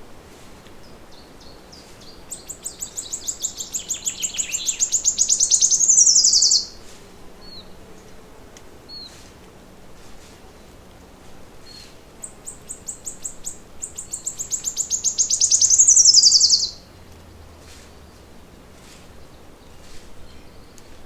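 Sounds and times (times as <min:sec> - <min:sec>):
bird chirps: 0:01.1 - 0:06.8, 0:11.7 - 0:16.8
songbird trilling: 0:01.1 - 0:06.8, 0:11.6 - 0:16.9.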